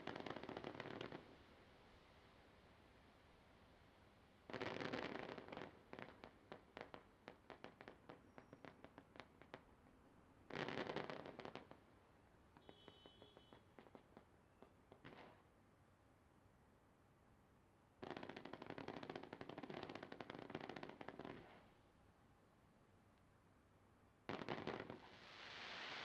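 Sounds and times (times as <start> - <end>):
fireworks bursts: 0.0 - 1.3, 18.0 - 21.7, 24.3 - 26.0
fireworks crackling pops: 0.0 - 1.6, 4.4 - 15.5, 18.0 - 21.8, 24.3 - 26.0.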